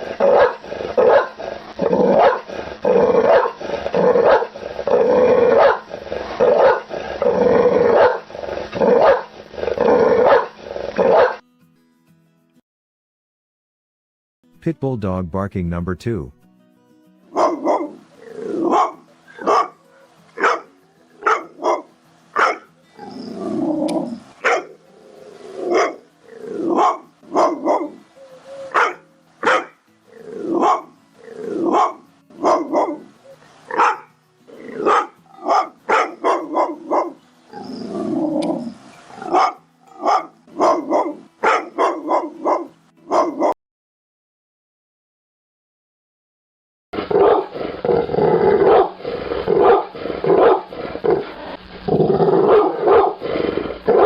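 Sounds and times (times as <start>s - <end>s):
dog barking aggressively: 0.0s - 4.6s, 5.3s - 7.0s, 7.8s - 9.3s, 10.2s - 11.4s, 17.4s - 18.0s, 18.6s - 19.8s, 20.4s - 22.7s, 24.4s - 24.8s, 25.7s - 26.0s, 26.7s - 28.0s, 28.7s - 29.8s, 30.5s - 30.9s, 31.6s - 33.0s, 33.7s - 34.1s, 34.7s - 37.2s, 39.2s - 43.5s, 47.0s - 47.6s, 48.5s - 51.2s, 52.4s - 53.2s
dog growling bark: 0.0s - 11.4s, 17.4s - 19.8s, 20.4s - 28.0s, 28.6s - 33.1s, 33.7s - 43.6s, 47.0s - 54.0s.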